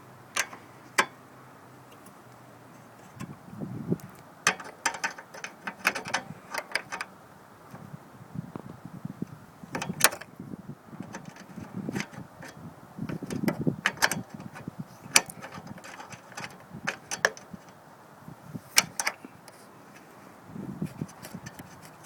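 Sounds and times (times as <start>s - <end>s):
hand tools clicking and clacking: 4.4s - 7.1s, 11.0s - 17.8s, 18.8s - 19.2s.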